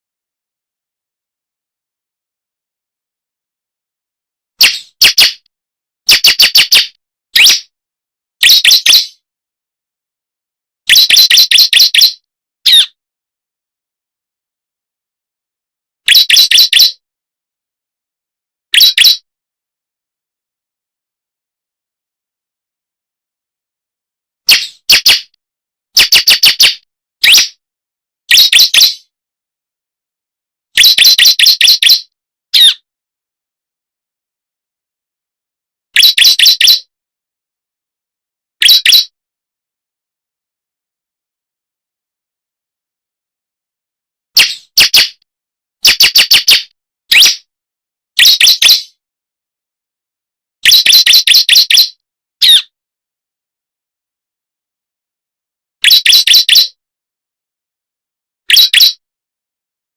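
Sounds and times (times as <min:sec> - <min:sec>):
bird sharp high chirps: 0:04.6 - 0:05.5, 0:06.1 - 0:07.7, 0:08.4 - 0:09.2, 0:10.9 - 0:13.0, 0:16.1 - 0:17.0, 0:18.7 - 0:19.2, 0:24.5 - 0:25.4, 0:26.0 - 0:27.6, 0:28.3 - 0:29.1, 0:30.8 - 0:32.8, 0:36.0 - 0:36.9, 0:38.6 - 0:39.2, 0:44.4 - 0:45.2, 0:45.8 - 0:47.5, 0:48.2 - 0:49.0, 0:50.6 - 0:52.7, 0:55.8 - 0:56.8, 0:58.5 - 0:59.0.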